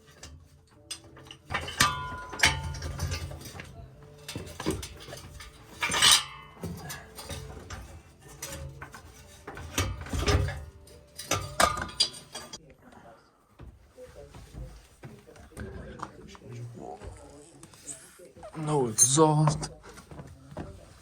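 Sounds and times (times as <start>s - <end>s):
metal tools clinking: 0.0s - 12.6s.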